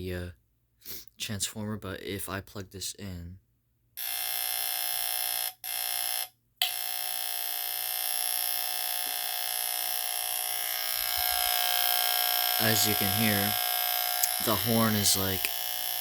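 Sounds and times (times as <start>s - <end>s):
smoke alarm horn tone: 10.1s - 15.6s.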